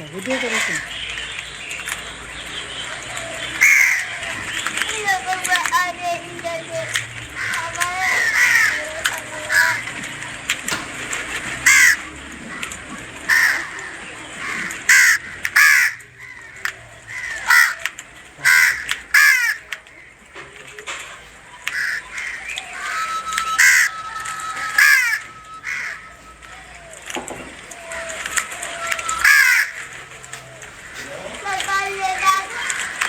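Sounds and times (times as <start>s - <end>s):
harsh bird calls: 0.0s - 33.0s
sharp clicks and knocks: 9.8s - 11.6s.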